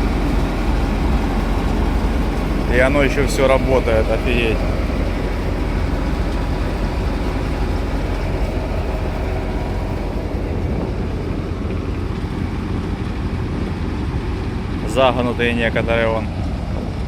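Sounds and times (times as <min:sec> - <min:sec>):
combine harvester engine rumble: 0:00.0 - 0:17.0.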